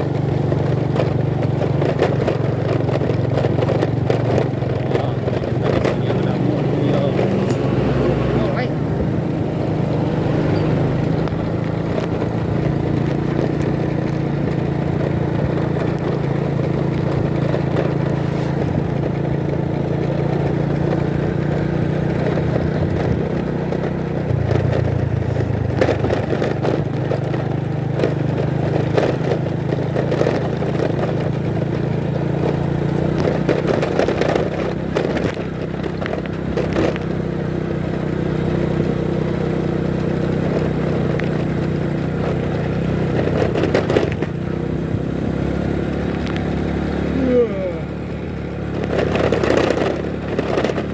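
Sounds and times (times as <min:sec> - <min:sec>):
motorcycle engine running: 0:00.0 - 0:50.9
road noise: 0:00.0 - 0:50.9
knocks and rattles: 0:00.6 - 0:07.7, 0:09.9 - 0:37.1.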